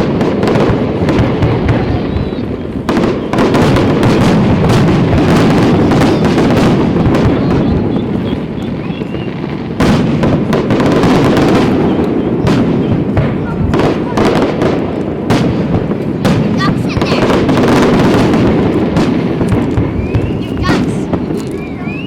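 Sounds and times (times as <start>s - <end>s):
fireworks bursting and crackling: 0.0s - 22.0s.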